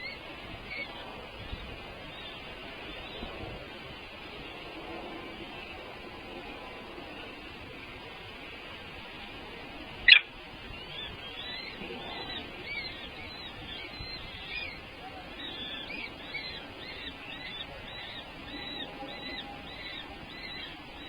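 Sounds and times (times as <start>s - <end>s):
high piping bird calls: 0.0s - 3.6s, 9.8s - 21.0s.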